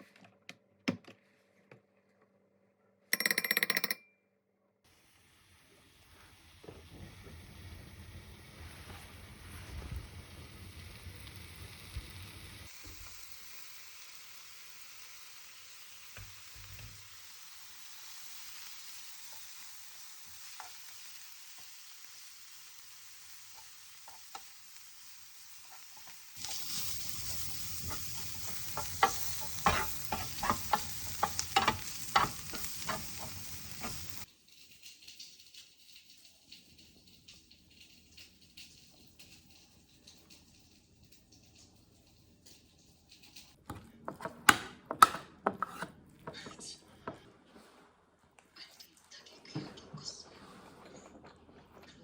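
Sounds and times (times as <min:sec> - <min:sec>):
food sizzling in a frying pan: 0:04.9 - 0:43.6
utensil clicking against pan: 0:26.0 - 0:34.3.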